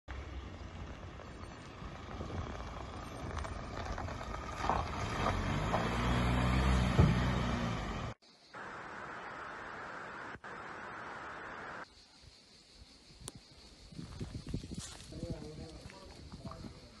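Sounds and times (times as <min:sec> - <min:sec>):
vehicle engine rumbling: 0:00.1 - 0:08.7
faint steady hiss: 0:08.2 - 0:13.6.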